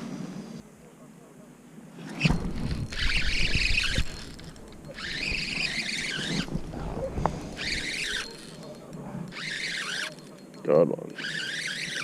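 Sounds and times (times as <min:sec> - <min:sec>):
fishing reel whirring: 0:02.1 - 0:12.0
wind rumbling on microphone: 0:02.2 - 0:08.0.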